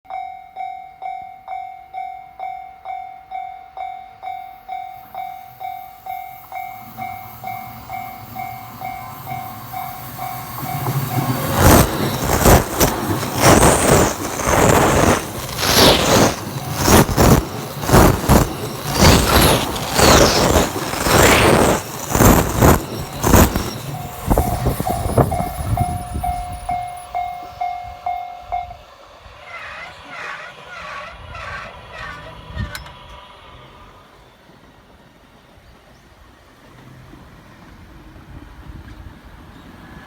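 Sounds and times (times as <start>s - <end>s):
train wheels clacking on rails: 3.8s - 35.1s
train rumble: 3.8s - 40.0s.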